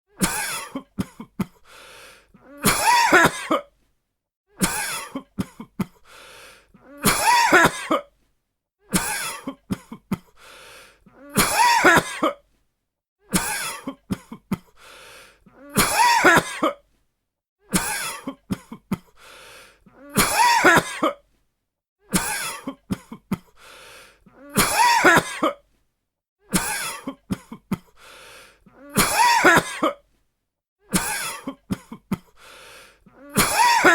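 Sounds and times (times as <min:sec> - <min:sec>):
person coughing: 0:00.2 - 0:01.6, 0:02.6 - 0:03.7, 0:04.6 - 0:06.0, 0:07.0 - 0:08.1, 0:09.0 - 0:10.3, 0:11.3 - 0:12.4, 0:15.7 - 0:16.8, 0:20.1 - 0:21.2, 0:22.2 - 0:23.5, 0:24.5 - 0:25.6, 0:26.6 - 0:27.9, 0:28.8 - 0:30.0, 0:30.9 - 0:32.3, 0:33.2 - 0:33.9.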